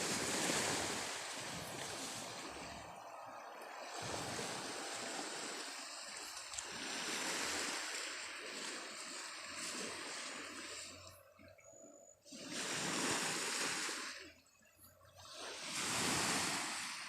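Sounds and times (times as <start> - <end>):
sea waves washing onto beach: 0.0 - 17.0.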